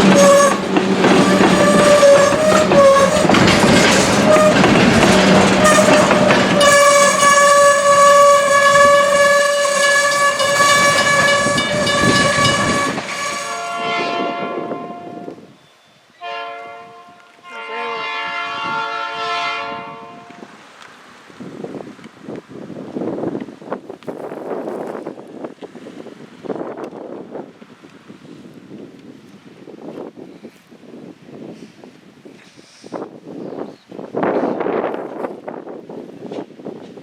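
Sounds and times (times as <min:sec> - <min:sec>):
train rumble and clatter: 0:00.0 - 0:15.4, 0:33.8 - 0:37.0
locomotive air horn blasts: 0:00.0 - 0:15.5, 0:16.2 - 0:20.5.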